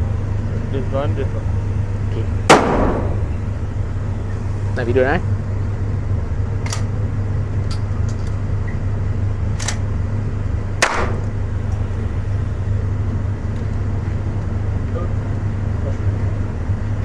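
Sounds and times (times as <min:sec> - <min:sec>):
steady low hum: 0:00.0 - 0:17.0
gunshots with ringing tail: 0:02.5 - 0:03.6, 0:10.8 - 0:11.3.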